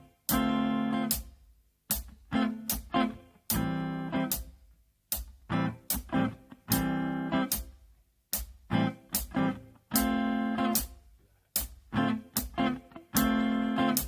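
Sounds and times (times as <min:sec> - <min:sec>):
guitar strumming chords: 0:00.0 - 0:01.3, 0:02.0 - 0:04.5, 0:05.5 - 0:07.8, 0:08.7 - 0:10.9, 0:11.9 - 0:14.0.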